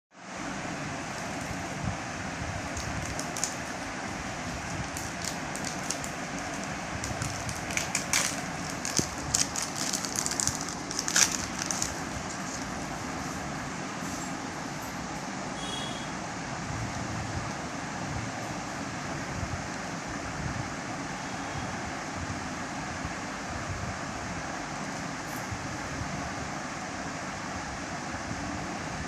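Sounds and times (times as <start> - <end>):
card packaging crinkling: 2.6 - 13.1.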